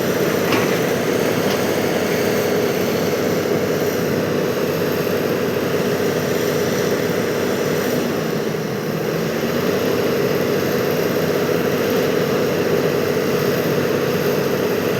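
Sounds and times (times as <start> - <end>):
excavator engine running: 0.0 - 7.9.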